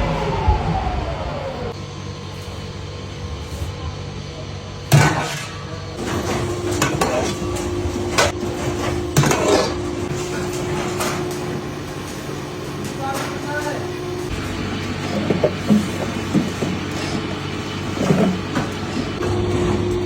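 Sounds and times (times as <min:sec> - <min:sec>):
machine hum: 0:00.0 - 0:20.0
hard objects clanking: 0:06.0 - 0:20.0.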